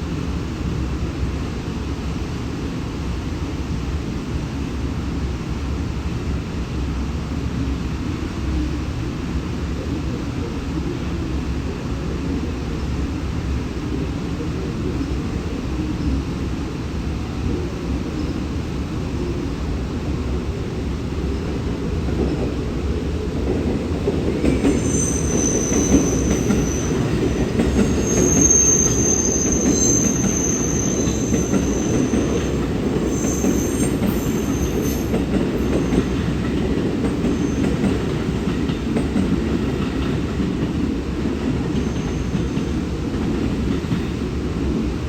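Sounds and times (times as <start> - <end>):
train wheels rumbling on rail: 0.0 - 45.0
high-pitched wheel squeal: 24.6 - 27.2, 27.8 - 32.4, 33.1 - 35.1.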